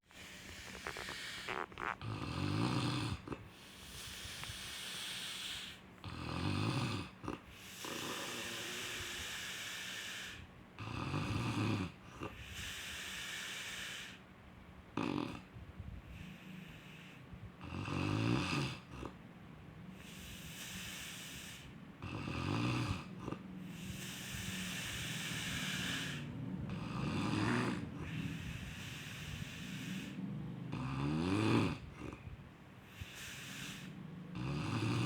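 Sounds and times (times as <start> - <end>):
breathy breaths: 0.0 - 2.0, 3.0 - 6.1, 7.1 - 10.6, 11.9 - 14.4, 16.0 - 17.6, 19.8 - 22.1, 23.0 - 35.0
person snoring: 0.2 - 12.4, 20.1 - 32.2, 33.0 - 35.0.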